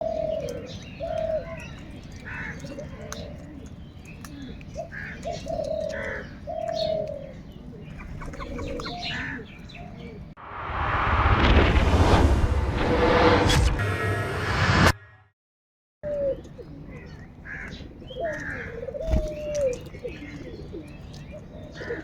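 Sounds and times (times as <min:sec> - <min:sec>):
crows cawing: 0:02.3 - 0:02.6, 0:09.0 - 0:09.5, 0:17.4 - 0:19.1.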